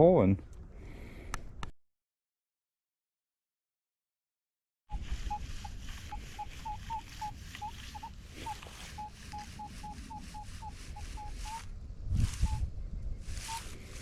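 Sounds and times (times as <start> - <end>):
metal detector high beeps: 4.9 - 11.7, 12.4 - 12.6, 13.4 - 13.7
rustling and handling noise: 5.0 - 12.6, 13.2 - 14.0.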